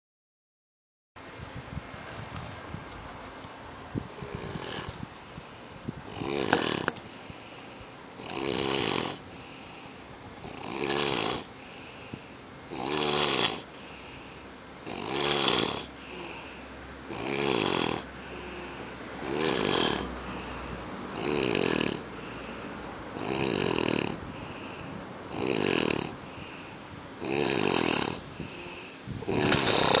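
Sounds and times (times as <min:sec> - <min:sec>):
rattling snores: 0:04.2 - 0:05.4, 0:06.0 - 0:07.3, 0:08.2 - 0:09.8, 0:10.4 - 0:26.6, 0:27.2 - 0:30.0.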